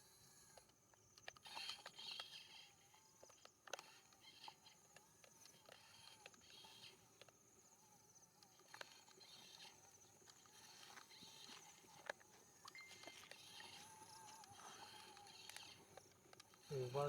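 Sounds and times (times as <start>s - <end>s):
light clicks: 8.4s - 17.0s.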